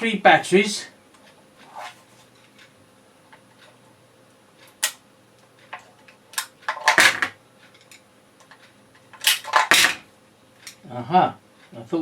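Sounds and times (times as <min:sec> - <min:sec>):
plastic clatter and rattle: 0:06.7 - 0:07.4, 0:09.2 - 0:10.0.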